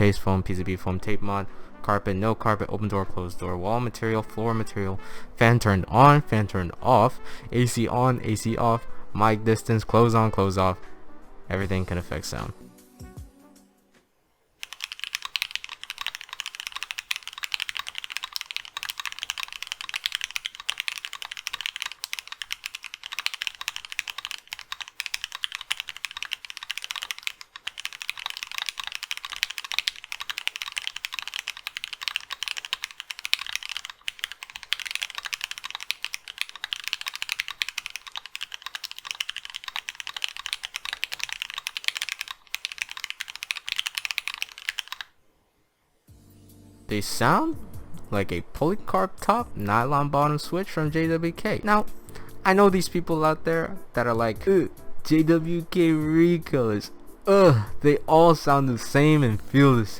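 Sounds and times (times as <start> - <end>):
fast mechanical keyboard typing: 14.6 - 45.1.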